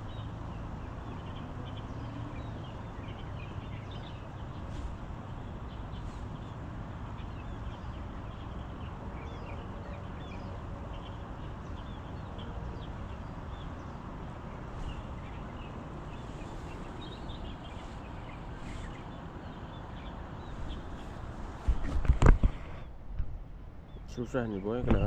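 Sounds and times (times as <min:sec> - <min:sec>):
small birds chirping: 0:00.0 - 0:23.0, 0:23.8 - 0:25.0.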